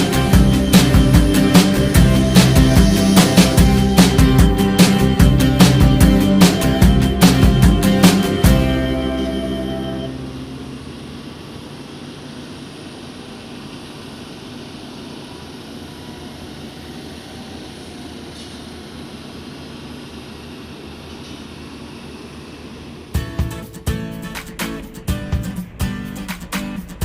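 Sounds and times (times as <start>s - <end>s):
engines droning: 0.0s - 21.2s.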